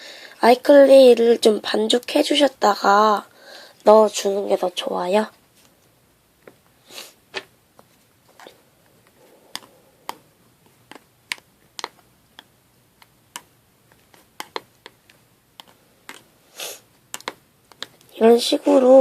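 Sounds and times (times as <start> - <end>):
light clicks and taps: 7.8 - 16.3.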